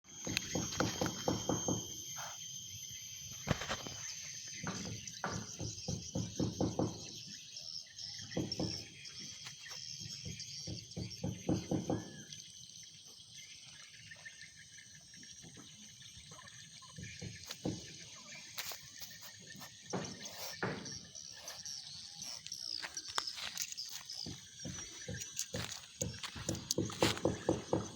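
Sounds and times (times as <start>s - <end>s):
steady high-pitched whine: 0.0s - 5.5s.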